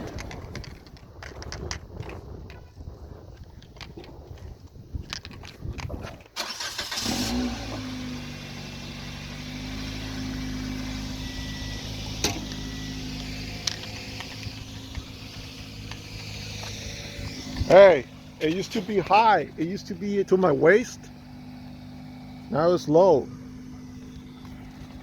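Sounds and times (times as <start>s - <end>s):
car engine starting and idling: 6.3s - 25.0s.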